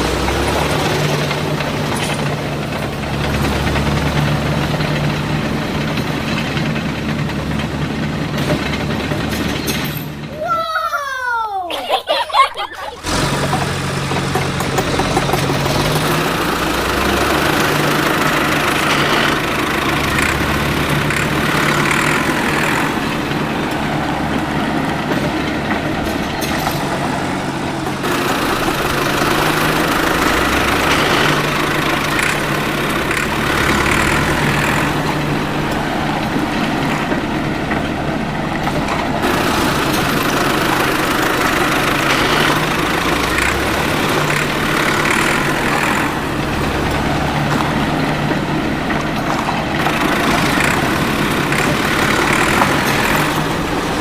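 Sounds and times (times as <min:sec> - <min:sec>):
motor humming: 0:11.9 - 0:54.0.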